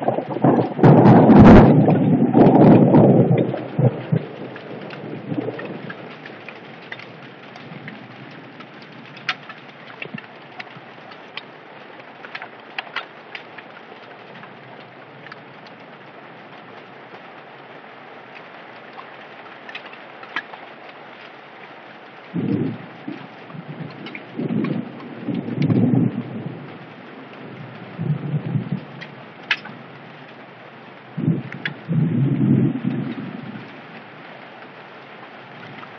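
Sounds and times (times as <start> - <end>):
low rumble: 0.0 - 5.8, 22.4 - 26.7
hailstones ticking on hard surfaces: 0.0 - 35.9
rain hiss: 0.0 - 35.9.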